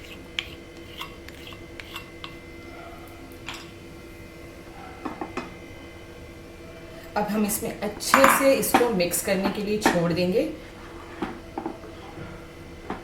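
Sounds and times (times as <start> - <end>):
spoon stirring in a pan: 0.0 - 2.4
faint steady hum: 0.0 - 13.0.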